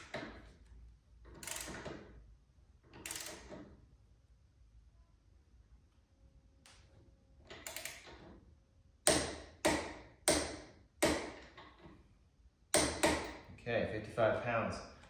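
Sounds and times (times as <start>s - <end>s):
socket and wrench rattling: 1.3s - 2.1s, 2.9s - 3.7s
torque wrench clicks: 1.4s - 1.8s, 3.0s - 3.5s, 7.5s - 8.1s.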